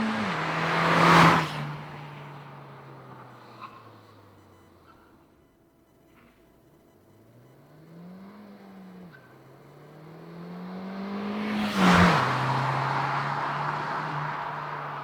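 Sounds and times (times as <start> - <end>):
car accelerating past: 0.0 - 4.0, 7.6 - 15.0.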